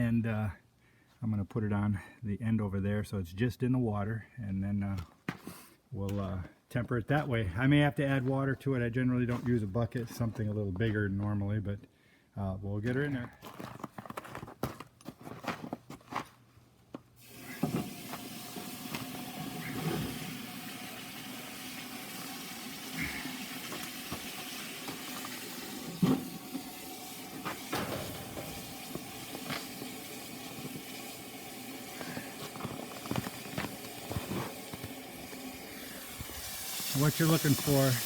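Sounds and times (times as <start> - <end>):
water hissing and bubbling: 17.2 - 38.0.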